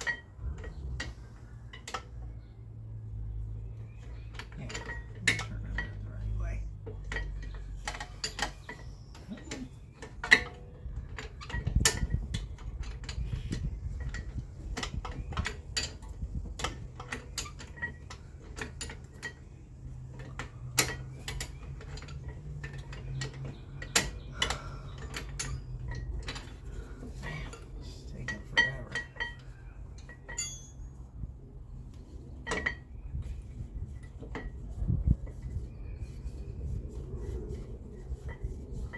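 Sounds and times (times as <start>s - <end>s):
metal hand tools clinking: 30.3s - 30.9s.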